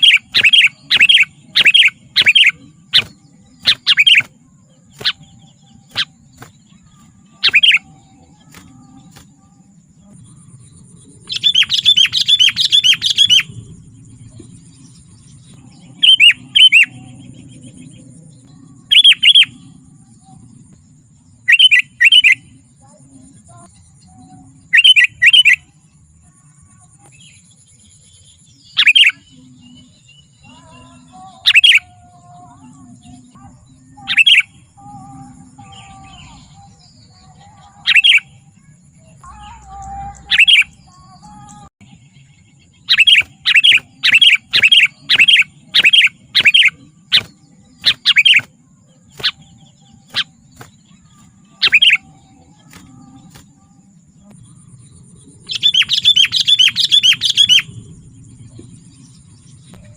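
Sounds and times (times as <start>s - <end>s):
bird chirping calls: 0.0s - 19.8s, 21.3s - 25.7s, 26.9s - 59.9s
faint high tone: 30.4s - 47.3s.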